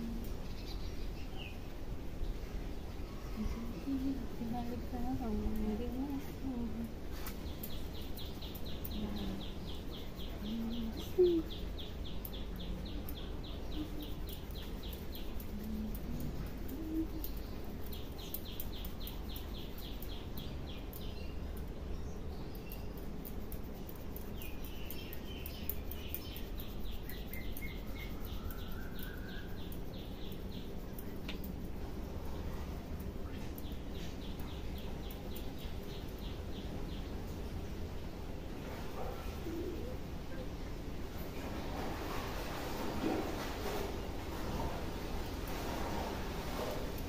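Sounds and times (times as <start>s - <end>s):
bird chirping: 0.0s - 6.3s, 7.1s - 32.4s, 33.0s - 38.2s
crackling clicks of hair snapping: 31.0s - 31.8s.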